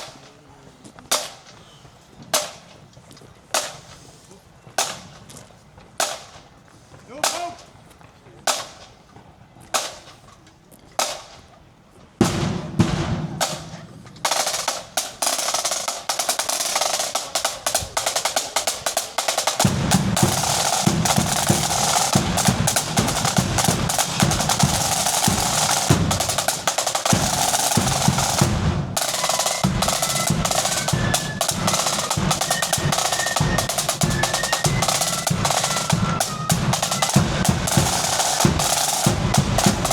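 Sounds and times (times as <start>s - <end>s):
snare drums rolling: 12.2s - 39.9s
flutes playing a tune: 19.4s - 39.9s
bass drum: 19.6s - 29.0s, 29.6s - 39.9s.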